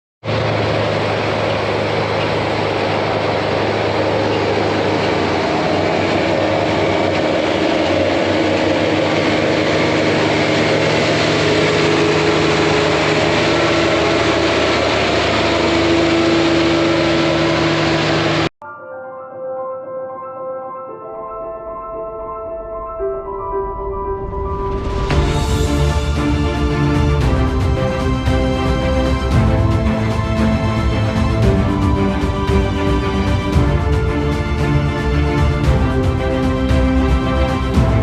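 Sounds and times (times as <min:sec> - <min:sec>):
mechanical whine: 0:00.2 - 0:18.5
tractor engine running: 0:00.2 - 0:18.5, 0:25.1 - 0:38.0.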